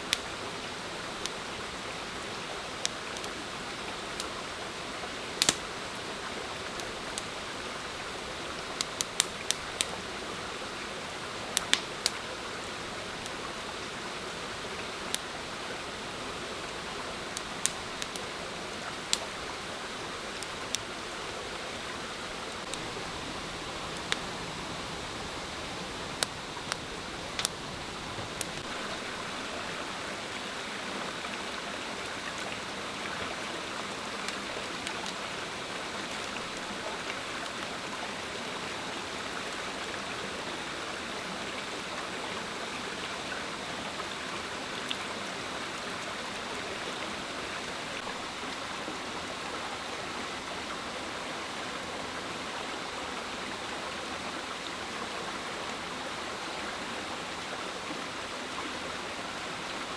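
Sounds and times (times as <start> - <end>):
rushing water: 0.0 - 59.9
sharp clicks: 5.4 - 5.7, 22.5 - 28.7.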